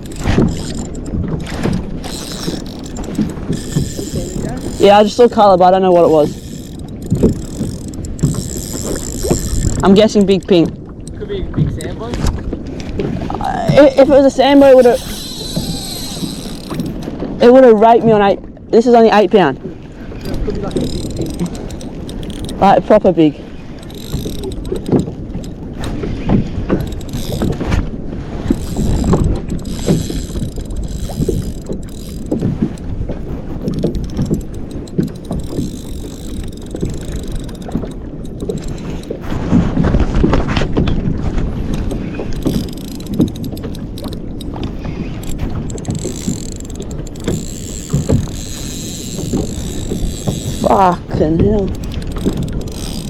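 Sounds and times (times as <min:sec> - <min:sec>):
fishing reel clicking: 0:00.0 - 0:11.2, 0:13.8 - 0:17.1, 0:20.2 - 0:25.9, 0:26.7 - 0:27.6, 0:28.4 - 0:32.9, 0:33.6 - 0:39.2, 0:41.8 - 0:51.0, 0:51.6 - 0:53.0
wind noise on microphone: 0:00.0 - 0:18.4, 0:19.6 - 0:53.0
water noise: 0:00.0 - 0:53.0.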